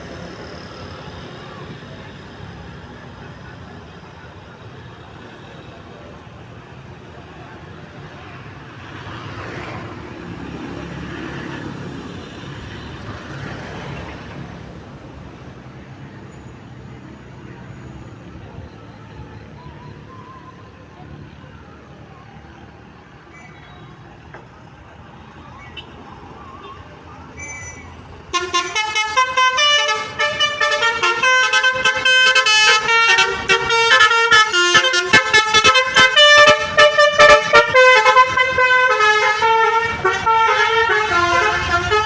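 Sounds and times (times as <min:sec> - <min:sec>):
roadside traffic noise: 0:00.0 - 0:42.0
vehicle passing: 0:28.4 - 0:42.0.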